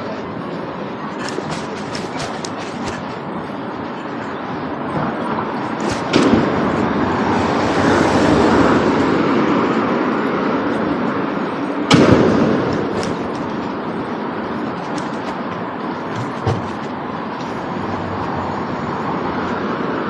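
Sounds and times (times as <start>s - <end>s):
train rushing rumble: 0.0s - 20.0s
sharp bangs: 5.4s - 8.9s, 11.9s - 19.3s.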